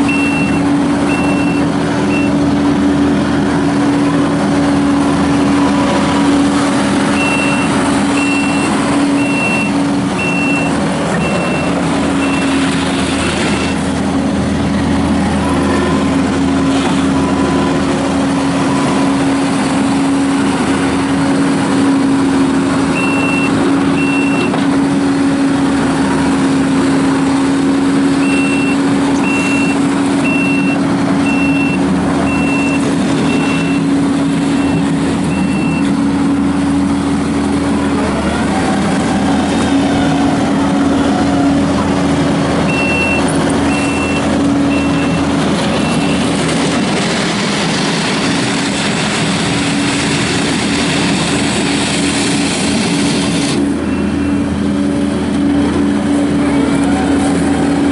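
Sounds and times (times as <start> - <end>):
backup alarm beeping: 0.0 - 2.4, 7.1 - 12.6, 23.0 - 24.6, 28.2 - 33.9, 34.6 - 35.9, 42.7 - 46.3
diesel engine running: 0.0 - 57.9.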